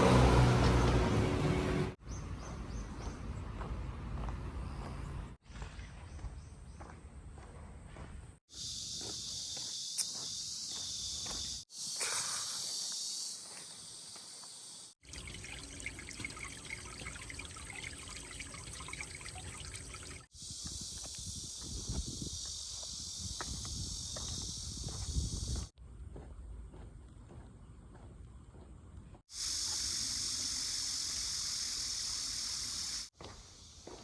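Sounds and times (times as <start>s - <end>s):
steady high hiss: 29.3s - 33.1s.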